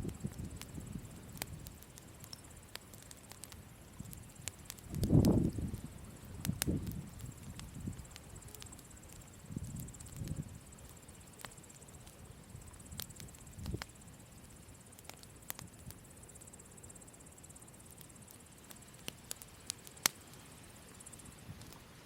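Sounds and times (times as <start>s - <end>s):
campfire crackling and popping: 0.0s - 16.4s, 17.4s - 22.0s.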